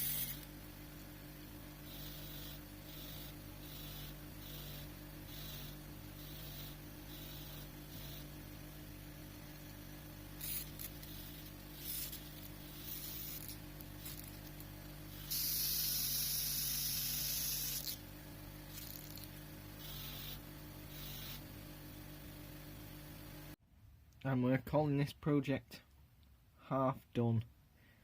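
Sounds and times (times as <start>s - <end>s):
steady low hum: 0.0s - 23.6s
hissing sprays: 15.2s - 17.8s.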